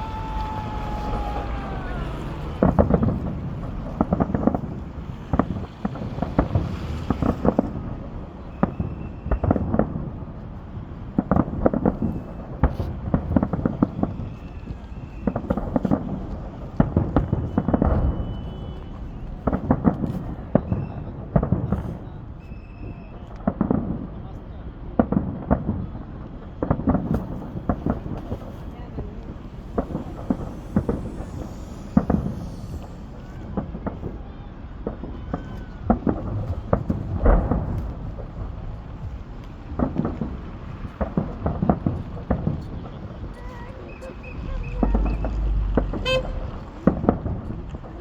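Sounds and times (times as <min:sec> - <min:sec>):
fireworks booming and cracking: 0:00.0 - 0:48.0.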